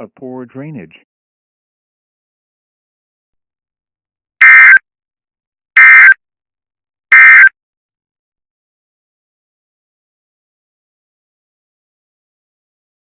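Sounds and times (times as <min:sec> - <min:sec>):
digital data tone bursts: 0:05.8 - 0:06.2.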